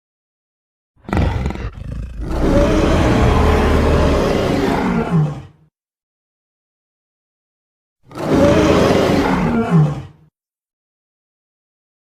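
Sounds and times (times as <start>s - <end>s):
monster roar: 1.0s - 5.6s, 8.1s - 10.2s.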